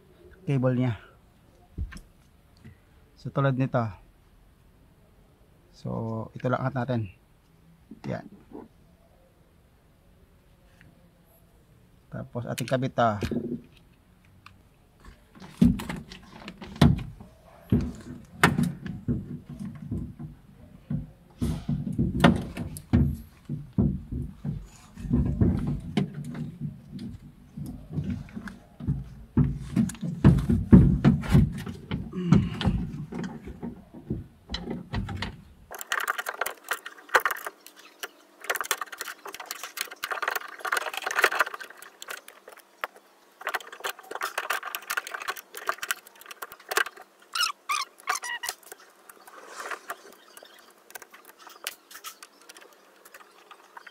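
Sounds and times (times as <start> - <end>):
plastic and metal parts rattling: 15.0 - 53.9.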